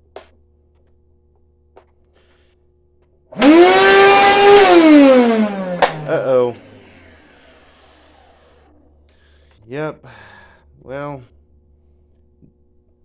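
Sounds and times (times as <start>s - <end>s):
carpet cleaner motor whining: 3.4s - 8.2s
sharp click: 5.8s - 6.1s.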